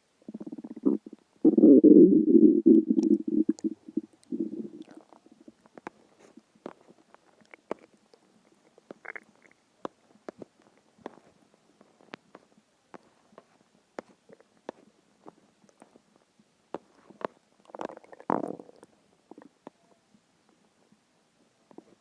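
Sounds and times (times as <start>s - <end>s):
stomach growling: 0.2s - 11.2s, 16.8s - 19.8s
stomach gurgles and pops: 0.2s - 11.4s, 16.8s - 19.8s.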